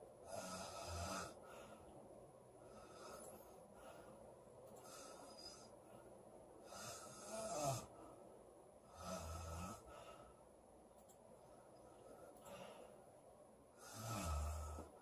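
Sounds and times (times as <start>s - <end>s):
girl snoring: 0.3s - 1.4s, 6.7s - 7.9s, 13.8s - 14.9s.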